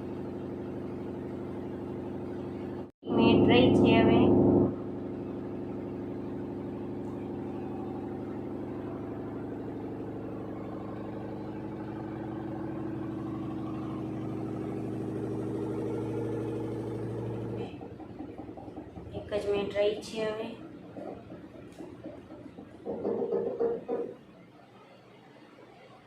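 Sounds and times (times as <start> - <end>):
washing machine drum spinning: 4.6 - 24.3.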